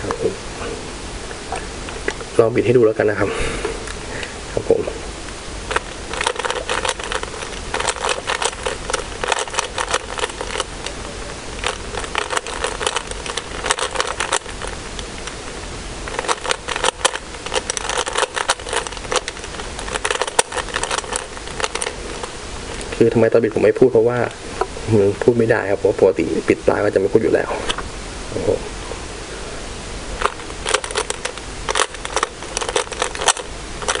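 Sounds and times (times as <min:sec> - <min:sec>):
puzzle cube plastic clicks: 0:05.7 - 0:15.4, 0:16.0 - 0:23.0, 0:30.2 - 0:34.0.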